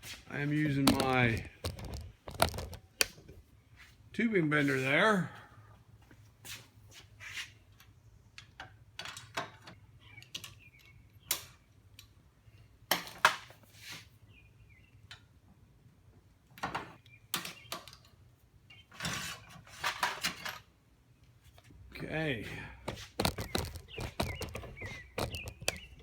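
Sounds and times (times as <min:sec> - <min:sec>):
tubing bender clicks: 0:00.8 - 0:03.4
steel tubing knocking: 0:23.2 - 0:26.0.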